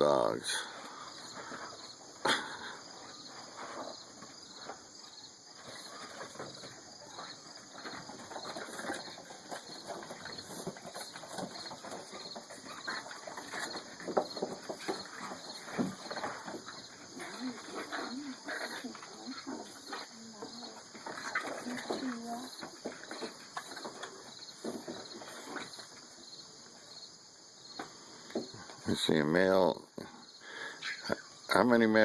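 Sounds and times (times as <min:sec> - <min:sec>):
puppies scratching and rustling: 0:05.5 - 0:26.1.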